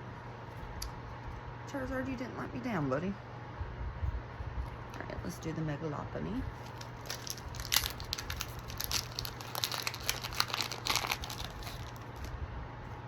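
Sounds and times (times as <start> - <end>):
foil wrapper crinkling: 6.5 - 12.3.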